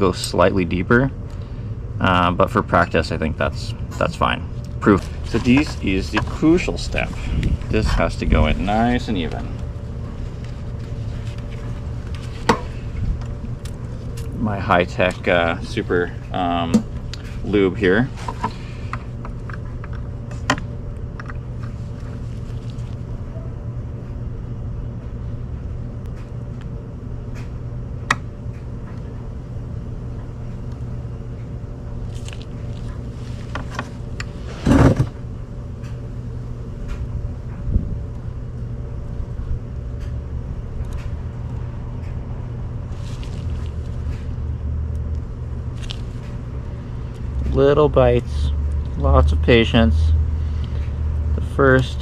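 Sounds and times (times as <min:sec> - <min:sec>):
low background rumble: 0:00.0 - 0:52.0.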